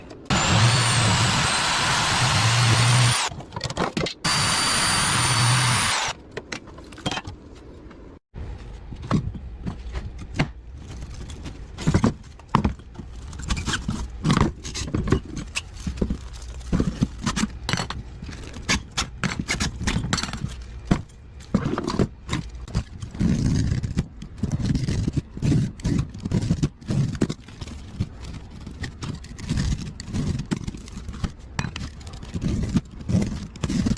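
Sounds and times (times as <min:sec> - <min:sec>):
power tool cutting whine: 0:00.3 - 0:03.3, 0:04.3 - 0:06.2.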